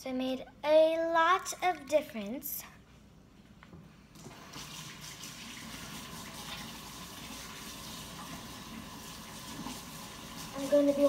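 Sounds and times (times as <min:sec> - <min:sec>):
tap water running into sink: 0:04.2 - 0:11.0.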